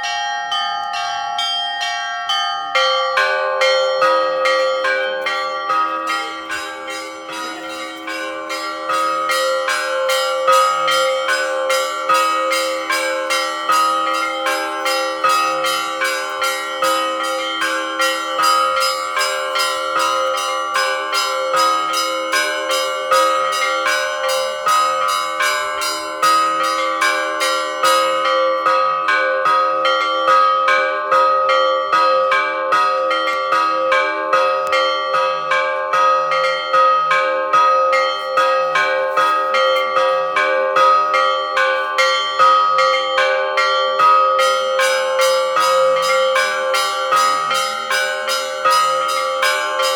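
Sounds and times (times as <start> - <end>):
large bells ringing: 0.0 - 49.9
small bells struck rapidly: 0.0 - 49.9.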